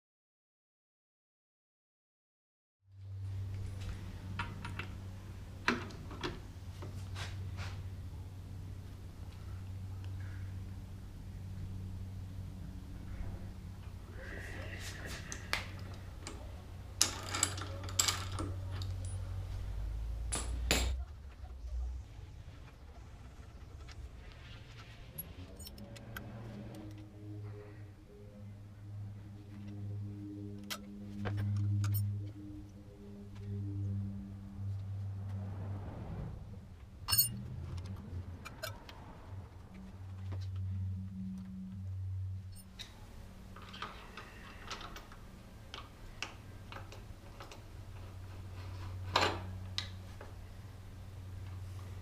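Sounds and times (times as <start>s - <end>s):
steady low hum: 2.9s - 52.0s
metallic clink with ring: 37.1s - 37.4s.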